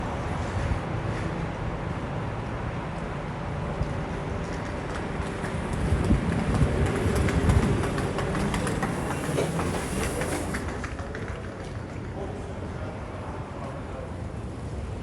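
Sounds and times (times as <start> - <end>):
train rumbling: 0.0 - 13.6
wheels clattering over rails: 4.4 - 12.9.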